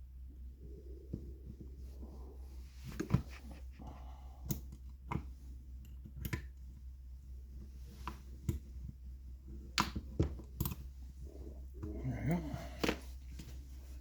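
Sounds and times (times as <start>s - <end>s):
steady low hum: 0.0s - 14.0s
light clicks and taps of handled parts: 2.8s - 6.8s, 7.6s - 11.0s, 11.8s - 13.6s.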